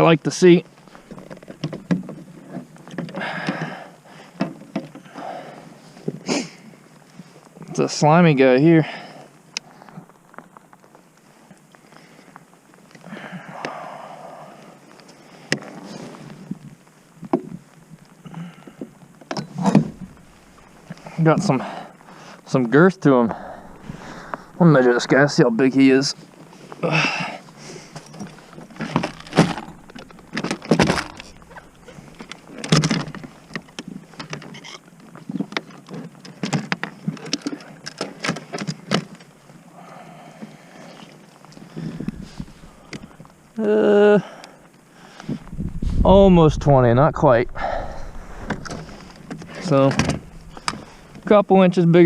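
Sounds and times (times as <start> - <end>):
soft rustling: 18.9 - 26.8, 27.4 - 35.2, 41.2 - 43.5, 44.6 - 51.4.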